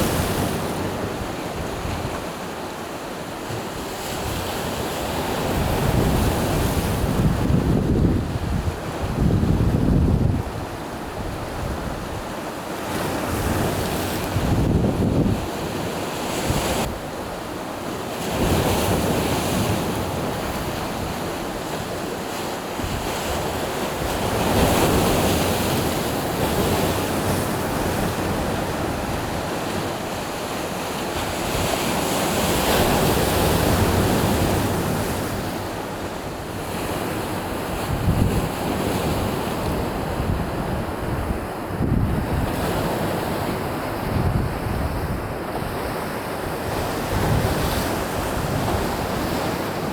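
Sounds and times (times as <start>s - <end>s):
sea waves breaking: 0.0s - 49.9s
wind buffeting microphone: 5.2s - 12.3s, 13.2s - 15.8s, 37.7s - 43.4s.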